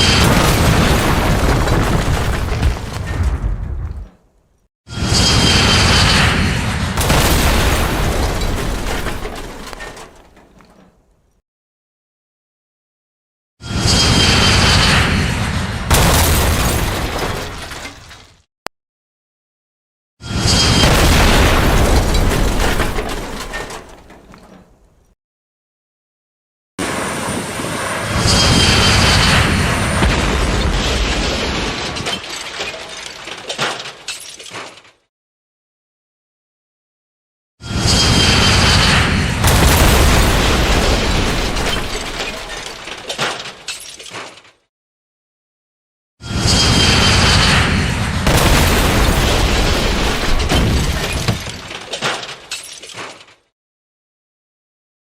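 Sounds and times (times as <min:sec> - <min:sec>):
crash and explosion: 0:00.0 - 0:04.3, 0:04.9 - 0:10.4, 0:13.6 - 0:18.5, 0:20.2 - 0:24.3, 0:28.1 - 0:34.3, 0:37.6 - 0:43.8, 0:46.2 - 0:53.2
rumble with crackles: 0:00.9 - 0:04.4.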